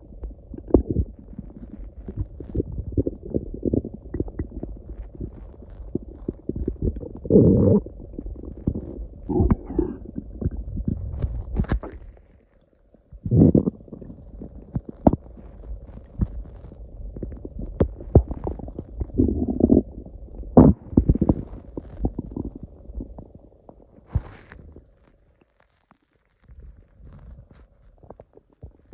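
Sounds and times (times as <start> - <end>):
stomach growling and gurgling: 0.0 - 28.9.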